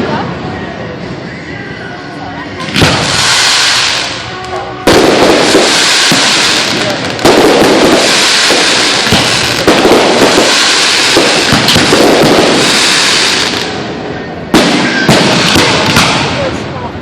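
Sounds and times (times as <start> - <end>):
fireworks crackling and booming: 2.6 - 17.0
sharp bangs: 2.7 - 13.9, 14.5 - 16.6.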